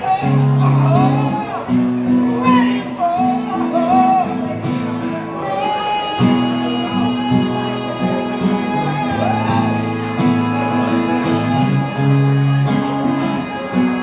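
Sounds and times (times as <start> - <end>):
acoustic guitar strumming chords: 0.0 - 14.0.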